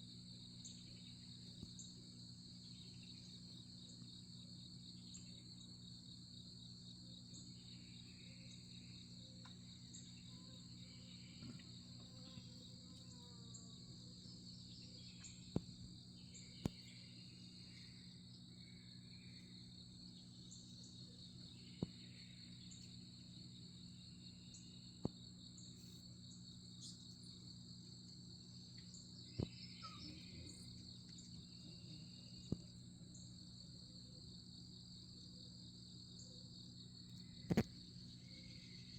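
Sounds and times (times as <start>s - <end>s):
low steady hum: 0.0s - 38.9s
faint bird chirps: 7.3s - 23.3s, 28.8s - 34.4s
insect trilling: 28.8s - 34.4s, 37.1s - 38.9s.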